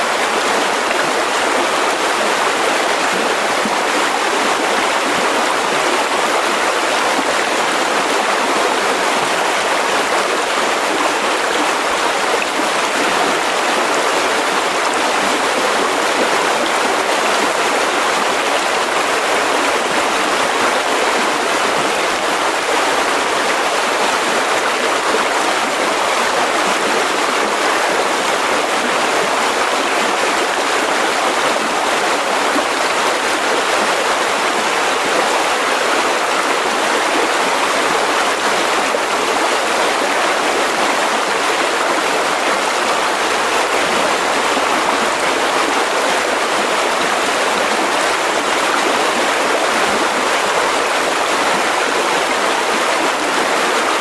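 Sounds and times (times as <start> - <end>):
river rushing over rocks: 0.0 - 54.0.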